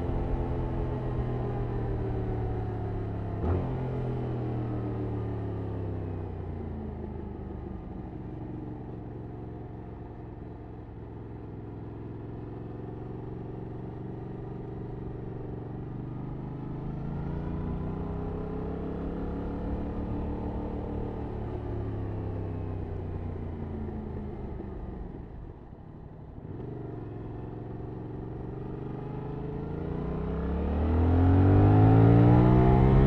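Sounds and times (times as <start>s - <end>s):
motorcycle engine revving: 26.4s - 33.0s.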